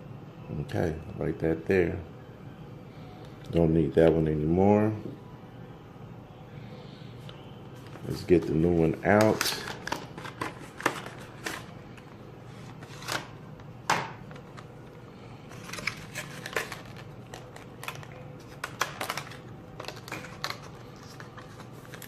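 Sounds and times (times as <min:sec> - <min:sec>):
packaging clicks and rustles: 0:09.0 - 0:13.4, 0:14.0 - 0:22.0.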